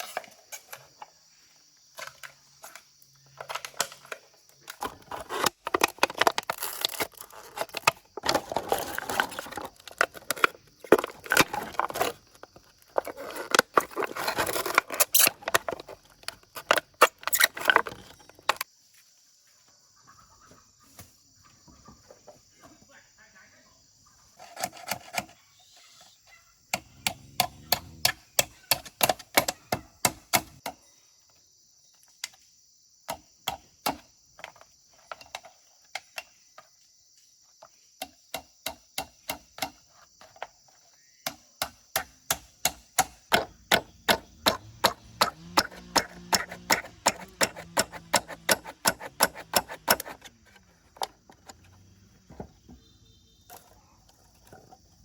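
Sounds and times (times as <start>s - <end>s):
insect buzz: 23.1s - 29.1s, 35.6s - 54.0s
blade chopping wood: 26.7s - 30.7s, 41.3s - 50.4s.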